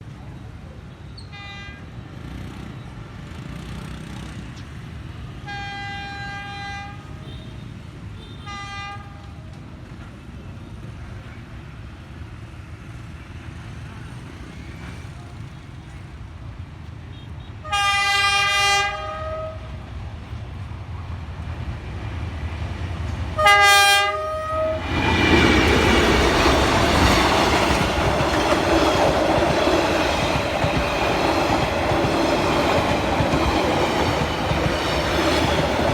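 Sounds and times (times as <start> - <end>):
low train rumble: 2.9 - 35.9
train horn blasts: 5.4 - 7.5, 8.2 - 9.4, 17.6 - 19.8, 23.4 - 25.1
train wheels clattering on rails: 24.8 - 35.9.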